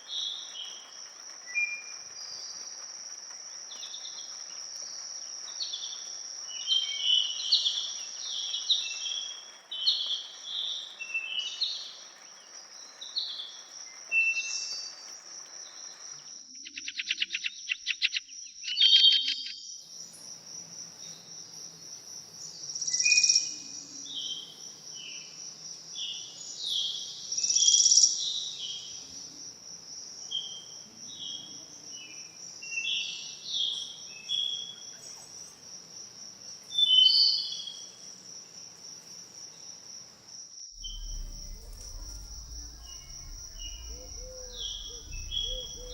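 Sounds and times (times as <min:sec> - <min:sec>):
songbirds singing: 0:05.4 - 0:19.8, 0:40.8 - 0:45.9
high insect drone: 0:19.9 - 0:45.9
rapid rattling trill: 0:40.8 - 0:45.9.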